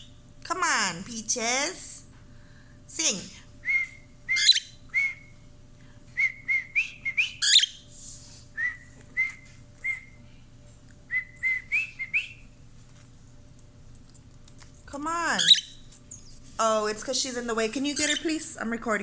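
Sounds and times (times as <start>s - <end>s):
cockatiel whistling: 3.6s - 5.3s, 6.2s - 7.8s, 8.6s - 10.2s, 11.1s - 12.5s, 15.4s - 16.3s
cockatiel chirp: 4.3s - 4.8s, 6.8s - 7.8s, 15.4s - 16.2s.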